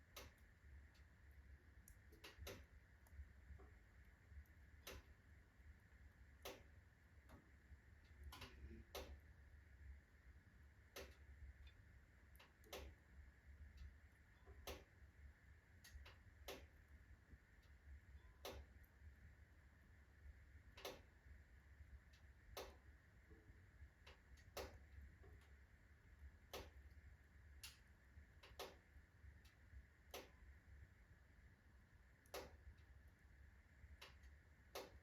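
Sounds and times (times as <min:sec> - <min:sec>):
fire crackling faintly: 0:00.0 - 0:35.0
low steady hum: 0:00.0 - 0:35.0.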